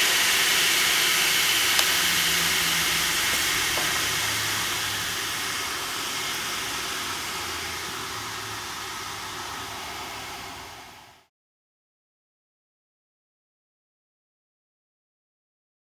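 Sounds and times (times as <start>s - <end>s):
mitre saw hissing: 0.0s - 11.3s.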